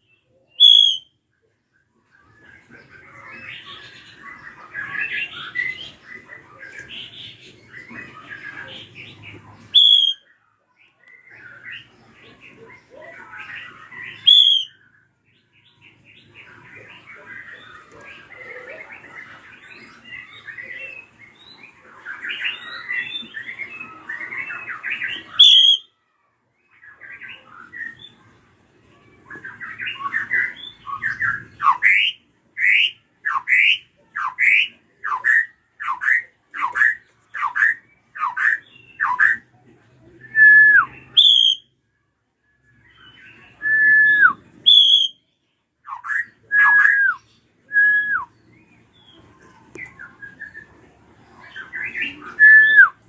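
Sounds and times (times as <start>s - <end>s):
bird calling with whistles: 0.5s - 1.1s, 9.7s - 10.3s, 14.0s - 14.8s, 24.7s - 25.9s, 40.3s - 41.7s, 43.6s - 45.2s, 45.9s - 48.3s, 51.8s - 53.0s.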